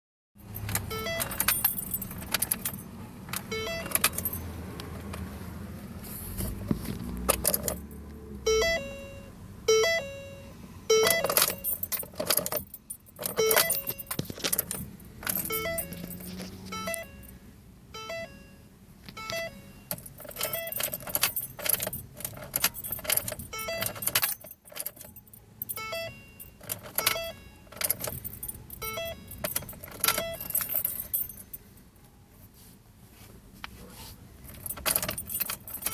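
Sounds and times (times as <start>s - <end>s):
car keys jangling in ignition: 0.4s - 5.3s, 6.4s - 8.9s, 10.9s - 17.4s, 19.0s - 31.7s, 34.4s - 35.9s
short beeping tones: 0.9s - 1.7s, 3.5s - 4.2s, 8.5s - 11.9s, 13.3s - 14.2s, 15.4s - 20.9s, 23.5s - 24.1s, 25.7s - 30.5s.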